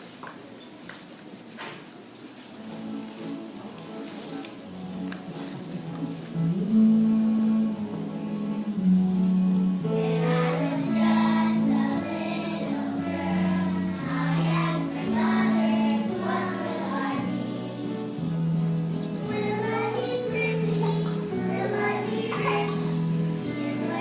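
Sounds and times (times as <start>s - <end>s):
held low accompaniment notes: 2.7s - 24.0s
voices singing: 6.3s - 24.0s.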